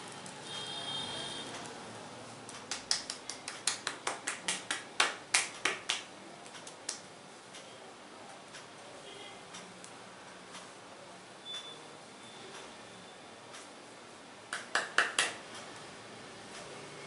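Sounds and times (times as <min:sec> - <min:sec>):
hair cracking between fingers: 0:02.5 - 0:07.1.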